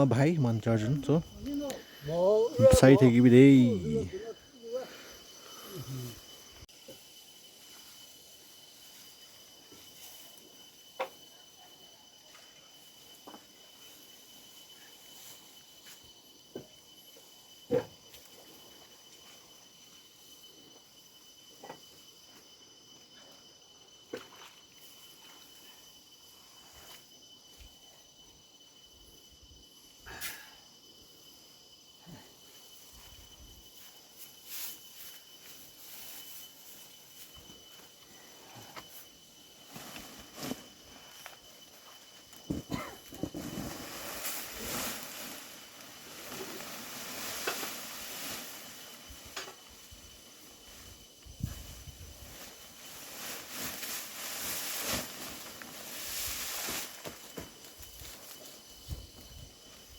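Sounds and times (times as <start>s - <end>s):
insect trilling: 0.0s - 59.9s
dry rice stalks rustling: 43.4s - 49.4s, 50.6s - 58.5s
soft rustles: 51.5s - 59.3s.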